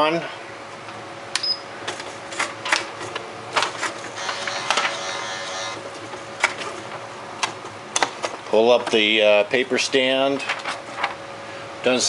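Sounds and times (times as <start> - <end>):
carriage motor whir: 4.2 - 5.9.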